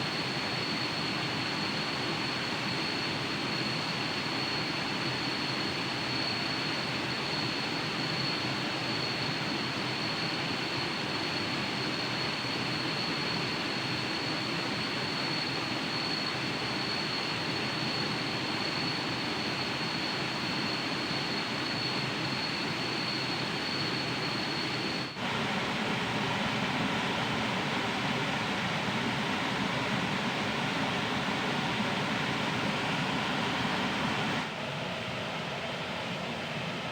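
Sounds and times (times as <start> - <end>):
thin high whine: 15.5 - 34.5.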